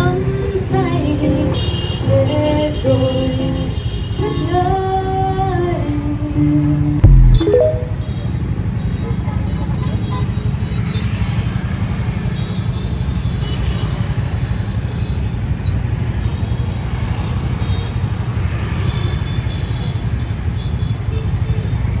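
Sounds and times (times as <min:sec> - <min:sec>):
brief high tones: 0:07.0 - 0:08.1
road traffic: 0:08.3 - 0:22.0.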